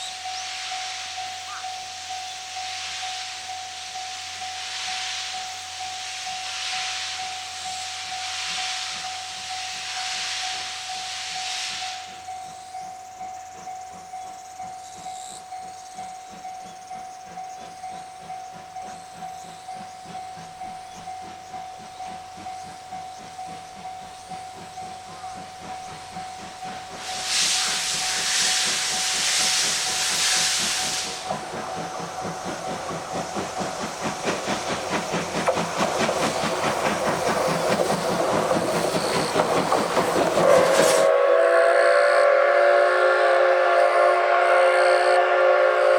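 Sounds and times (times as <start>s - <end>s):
steam hissing from locomotive: 0.0s - 45.9s
steam locomotive exhaust chuffs: 0.0s - 45.9s.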